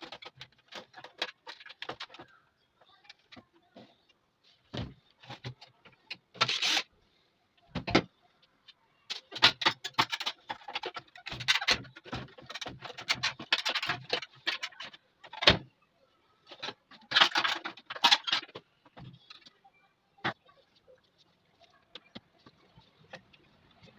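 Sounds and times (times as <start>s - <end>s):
metal parts clinking and rattling: 9.1s - 15.6s, 16.5s - 18.6s.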